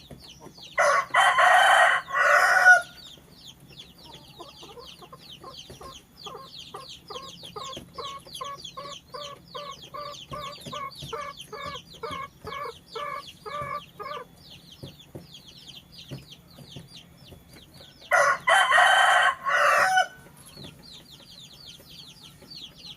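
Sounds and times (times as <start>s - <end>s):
chicken clucking: 0.0s - 22.9s
rooster crowing: 0.8s - 3.0s, 18.1s - 20.2s.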